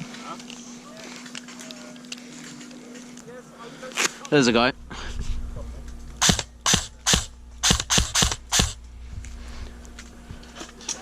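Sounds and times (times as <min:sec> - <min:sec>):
airsoft gun shots: 0:06.2 - 0:08.8.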